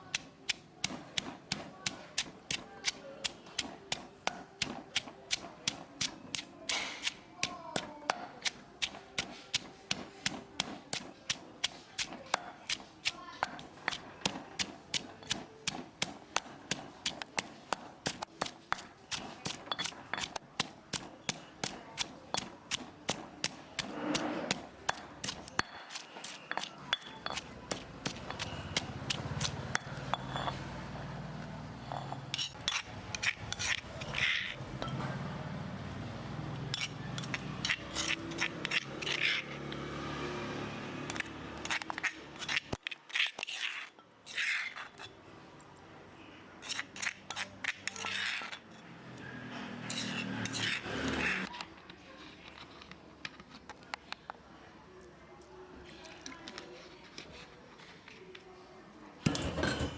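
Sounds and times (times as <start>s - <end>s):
utensils and dishes clinking: 24.9s - 30.9s, 31.8s - 35.4s, 36.7s - 39.6s, 49.6s - 51.5s, 59.2s - 59.9s.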